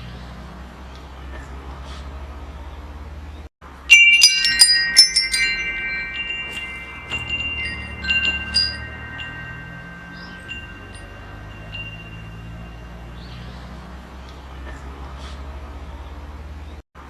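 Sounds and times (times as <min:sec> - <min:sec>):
wind chimes ringing: 0:03.7 - 0:13.8.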